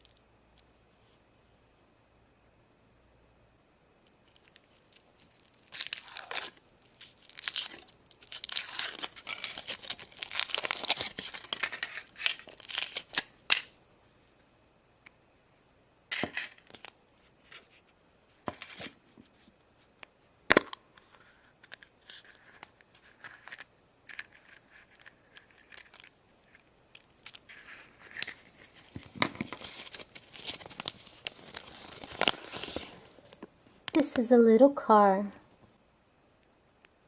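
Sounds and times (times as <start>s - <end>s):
wrapper crinkling and tearing: 4.2s - 13.7s, 22.1s - 33.4s.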